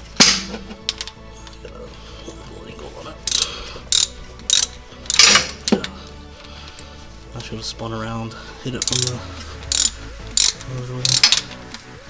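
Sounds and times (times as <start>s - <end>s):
socket ratchet clicking: 3.3s - 5.8s, 8.8s - 11.8s.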